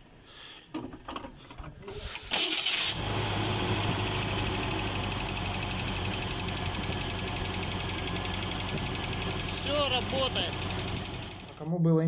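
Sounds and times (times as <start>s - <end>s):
petrol engine idling: 2.7s - 11.7s.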